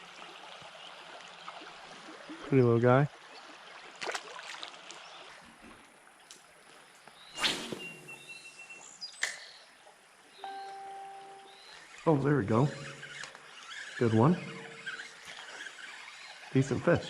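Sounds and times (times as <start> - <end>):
fishing rod swish: 7.4 - 8.3
thin steady tone: 10.4 - 17.0.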